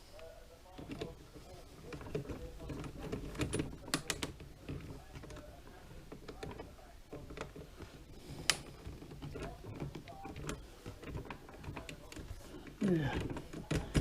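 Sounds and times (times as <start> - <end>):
small plastic parts clicking: 1.9 - 7.7.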